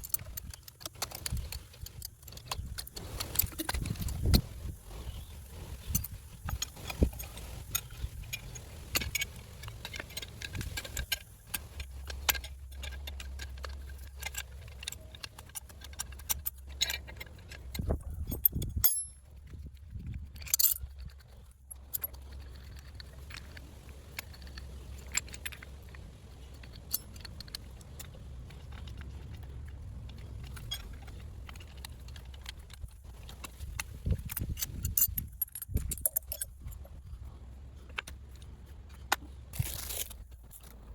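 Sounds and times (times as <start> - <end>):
low steady hum: 0.0 - 40.9
metal tools clinking and knocking: 5.8 - 29.4, 30.2 - 37.2.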